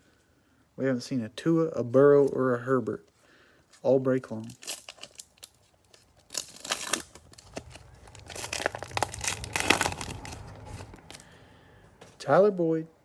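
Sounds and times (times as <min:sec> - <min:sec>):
plastic wrapper tearing and crinkling: 0:04.4 - 0:11.3.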